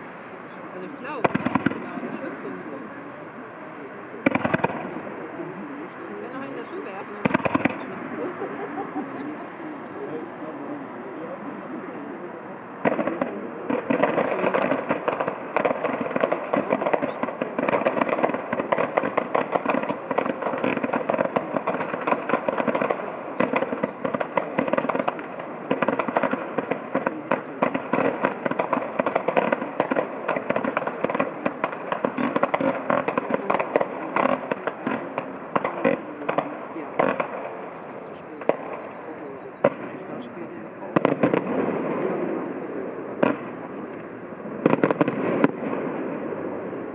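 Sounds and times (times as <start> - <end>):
fireworks crackling and popping: 0.0 - 46.9.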